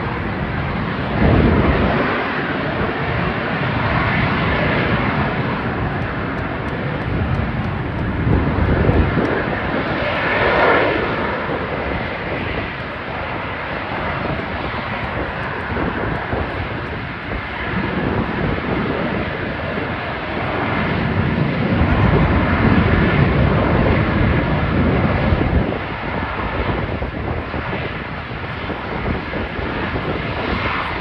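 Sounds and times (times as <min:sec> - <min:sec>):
aircraft flying past: 0:00.0 - 0:31.0.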